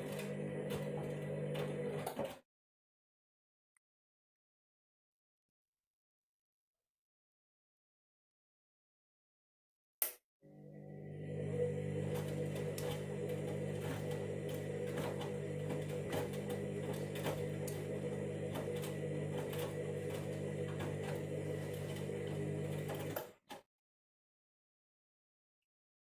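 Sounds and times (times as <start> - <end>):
washing machine motor hum: 0.0 - 2.3, 10.5 - 23.4.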